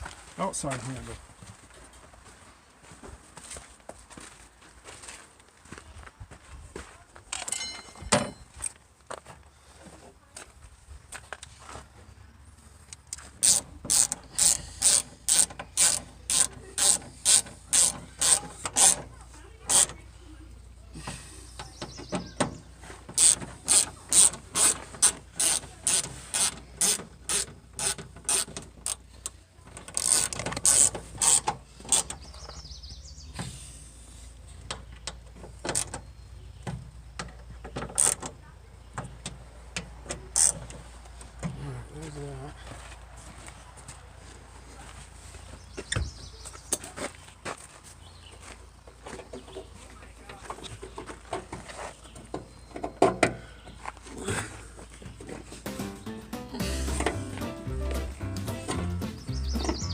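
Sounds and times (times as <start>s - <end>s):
ratchet wrench clicking: 13.4s - 19.0s, 23.2s - 29.0s, 29.9s - 32.0s.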